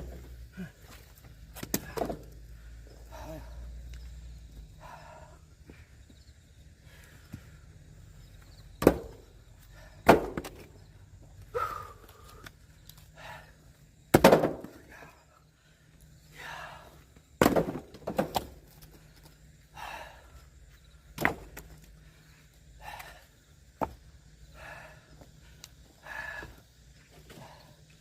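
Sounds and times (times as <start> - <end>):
axe splitting firewood: 1.5 - 2.4, 8.8 - 9.3, 10.0 - 10.7, 14.1 - 15.0, 17.4 - 18.8, 21.1 - 21.8.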